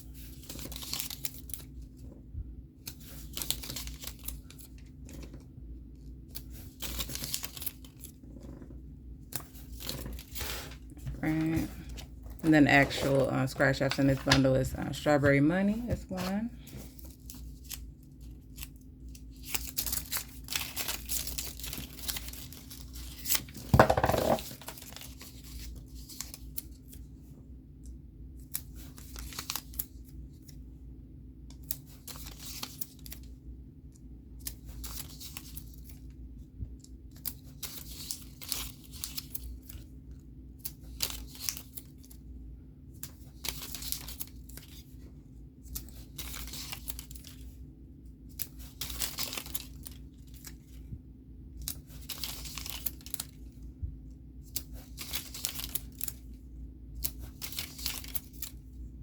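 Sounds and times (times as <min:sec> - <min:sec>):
paper rustling and tearing: 0:00.2 - 0:02.0, 0:02.8 - 0:05.4, 0:06.2 - 0:12.0, 0:16.1 - 0:27.1, 0:28.5 - 0:30.4, 0:31.6 - 0:33.3, 0:34.4 - 0:36.1, 0:37.1 - 0:39.9, 0:40.6 - 0:42.2, 0:43.0 - 0:45.1, 0:45.7 - 0:47.6, 0:48.3 - 0:50.8, 0:51.6 - 0:53.6, 0:54.5 - 0:56.4, 0:57.0 - 0:58.6.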